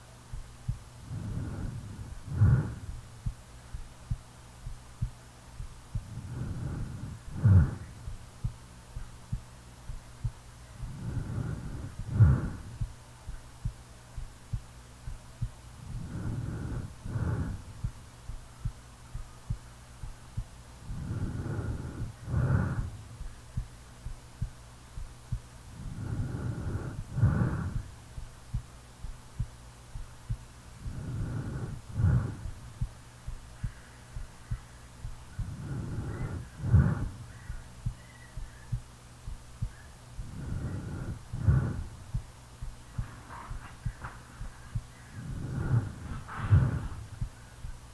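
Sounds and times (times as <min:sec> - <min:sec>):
heartbeat thumping: 0:00.3 - 0:47.9
person snoring: 0:01.0 - 0:02.9, 0:06.1 - 0:08.0, 0:10.9 - 0:12.8, 0:15.8 - 0:17.7, 0:20.8 - 0:23.0, 0:25.7 - 0:27.9, 0:30.8 - 0:32.6, 0:35.4 - 0:37.3, 0:40.2 - 0:42.0, 0:45.1 - 0:47.2.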